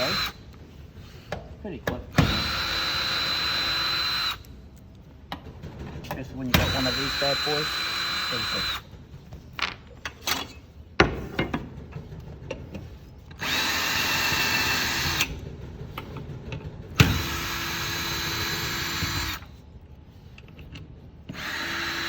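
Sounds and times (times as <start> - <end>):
cordless drill motor whine: 0.0 - 0.4, 2.2 - 4.4, 6.6 - 8.8, 13.4 - 15.3, 17.0 - 19.5, 21.3 - 22.0.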